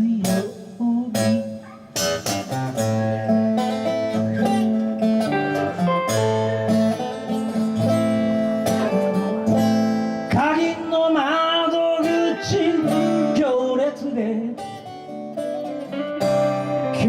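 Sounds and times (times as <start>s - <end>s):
strummed acoustic guitar: 0.0s - 17.0s
wavering lead melody: 1.4s - 10.3s.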